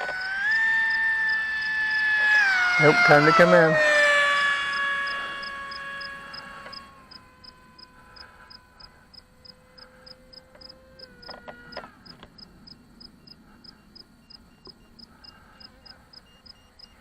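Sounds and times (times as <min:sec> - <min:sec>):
motor clicks: 0:00.0 - 0:02.8, 0:04.1 - 0:07.6
model plane motor whine: 0:00.0 - 0:12.3
high insect chirps: 0:00.0 - 0:17.0.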